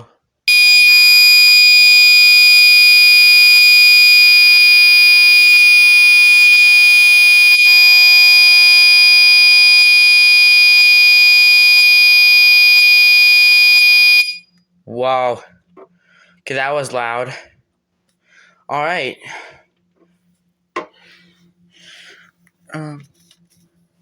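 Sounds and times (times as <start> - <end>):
fire alarm tone: 0.5 - 14.6.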